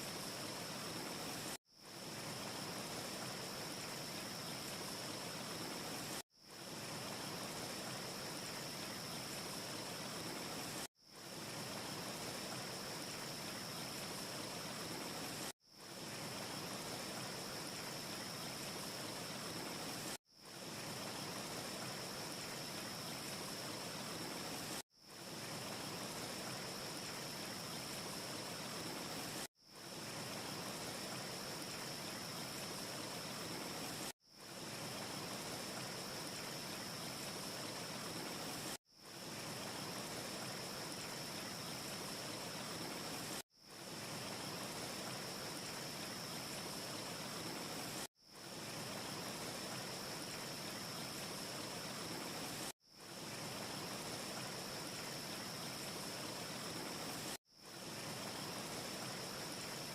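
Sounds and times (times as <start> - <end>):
steady hiss with faint whistle: 0.0 - 59.9.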